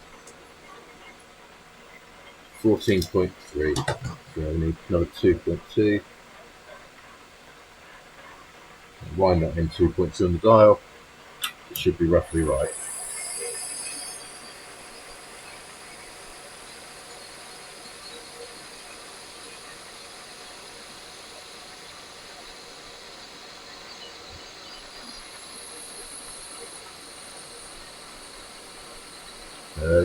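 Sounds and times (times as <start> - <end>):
lathe cutting with hiss: 12.0 - 30.0.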